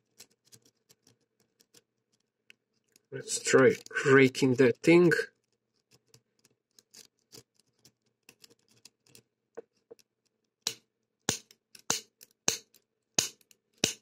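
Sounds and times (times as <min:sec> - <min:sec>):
lock picks scratching metal: 0:00.0 - 0:04.2, 0:05.3 - 0:14.0
sharp metallic snaps: 0:10.6 - 0:14.0.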